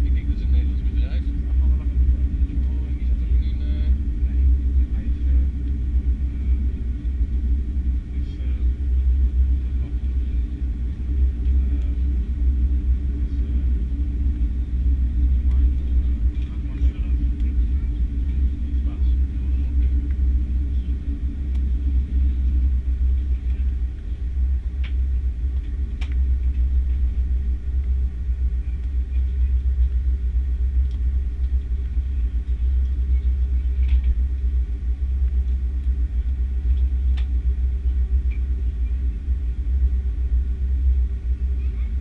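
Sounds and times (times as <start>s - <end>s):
jet engines idling: 0.0s - 42.0s
faint clicks: 24.8s - 26.6s, 36.7s - 37.4s.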